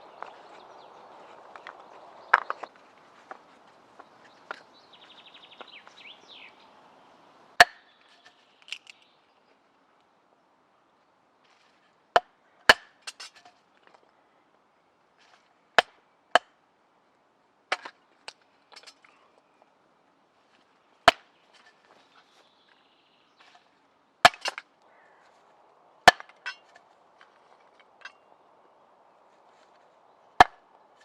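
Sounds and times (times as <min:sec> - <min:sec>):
firewood chopping strikes: 0:01.5 - 0:03.4, 0:07.6 - 0:07.9, 0:12.2 - 0:13.4, 0:15.8 - 0:16.6, 0:21.1 - 0:21.7, 0:24.2 - 0:24.7, 0:26.0 - 0:28.2, 0:30.4 - 0:30.7.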